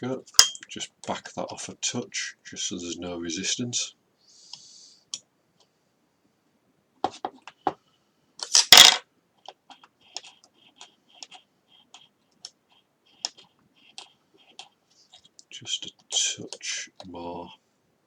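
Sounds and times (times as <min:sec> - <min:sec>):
plastic parts clattering: 0:08.4 - 0:09.0.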